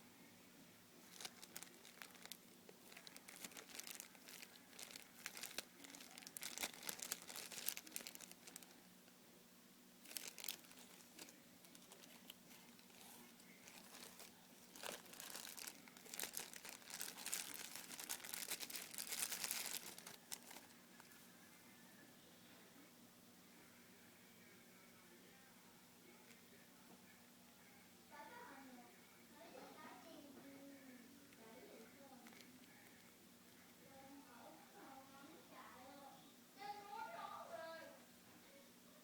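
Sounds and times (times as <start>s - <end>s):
plastic packaging crinkling: 1.0s - 8.9s, 10.0s - 21.1s.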